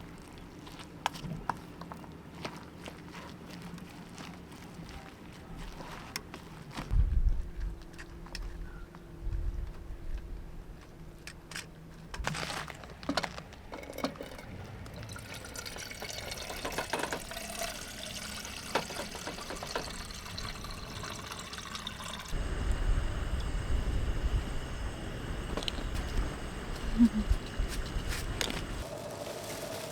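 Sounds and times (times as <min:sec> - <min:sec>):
water pouring: 0:13.8 - 0:23.5.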